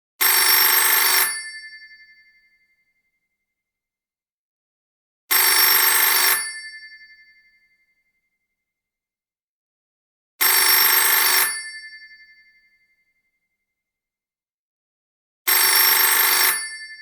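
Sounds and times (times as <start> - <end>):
telephone ringing: 15.5 - 16.8.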